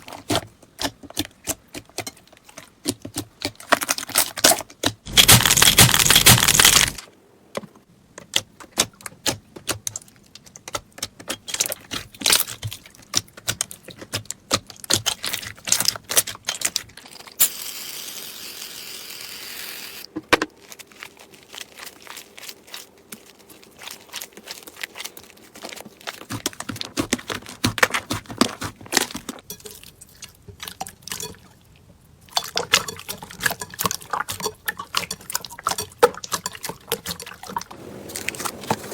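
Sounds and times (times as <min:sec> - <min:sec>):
slime popping and crackling: 0:03.1 - 0:07.0, 0:20.5 - 0:29.4.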